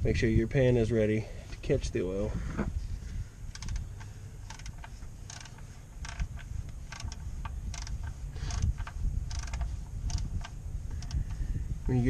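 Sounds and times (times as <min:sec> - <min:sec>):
ratchet clicking: 0:03.5 - 0:12.0.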